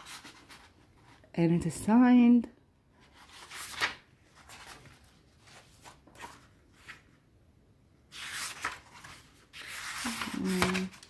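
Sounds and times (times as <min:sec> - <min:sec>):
book pages turning: 0:03.0 - 0:07.2, 0:08.1 - 0:11.0.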